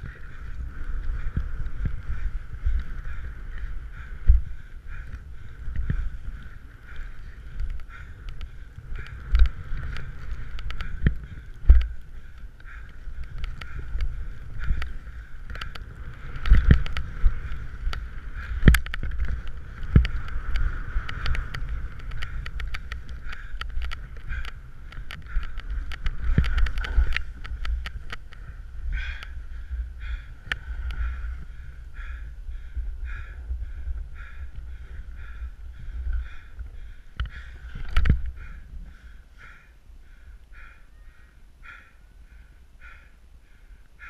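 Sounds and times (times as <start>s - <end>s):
person breathing heavily: 0.0s - 9.3s, 28.4s - 44.0s
skis scraping over snow: 0.0s - 29.2s
wind buffeting microphone: 0.0s - 44.0s.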